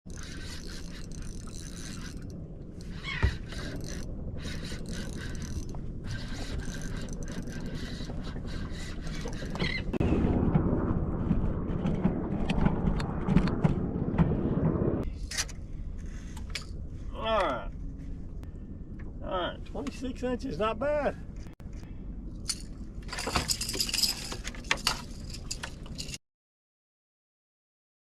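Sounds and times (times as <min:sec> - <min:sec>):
fishing reel whirring with clicks: 0:00.1 - 0:09.6.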